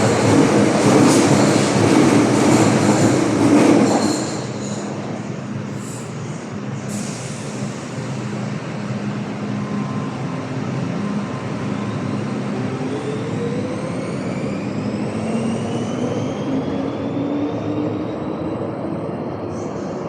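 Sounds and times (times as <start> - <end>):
train wheels rolling on track: 0.0 - 10.1.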